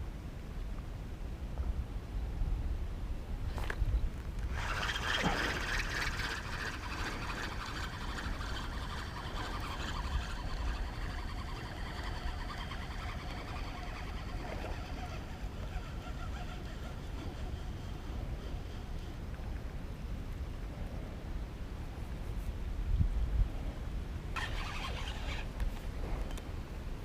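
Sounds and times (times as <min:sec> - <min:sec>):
distant motor whining past: 0:04.5 - 0:18.9.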